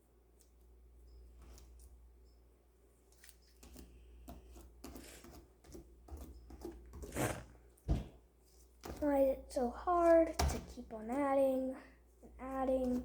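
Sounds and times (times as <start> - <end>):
slime squelching by hand: 7.0 - 8.1.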